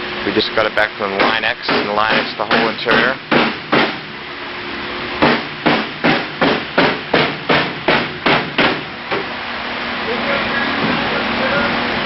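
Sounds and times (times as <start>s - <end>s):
hammer strikes: 1.2s - 4.0s, 5.2s - 9.3s.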